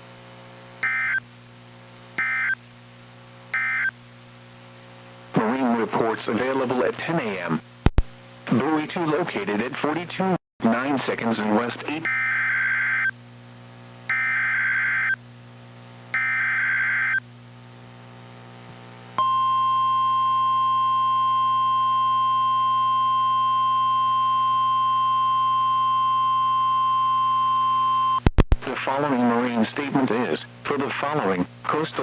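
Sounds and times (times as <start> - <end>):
steady warning alarm tone: 0.8 - 1.2, 2.2 - 2.6, 3.6 - 3.9, 16.2 - 17.2, 19.2 - 28.2
low hum: 19.2 - 28.7.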